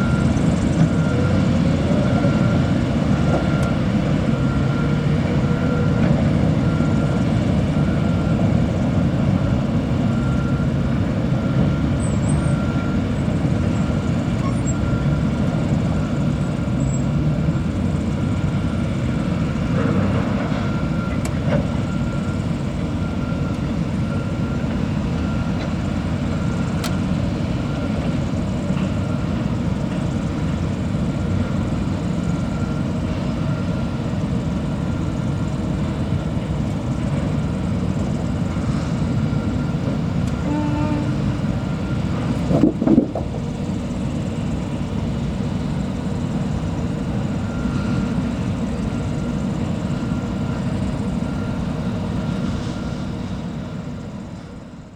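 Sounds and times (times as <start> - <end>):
heavy engine running: 0.0 - 54.9.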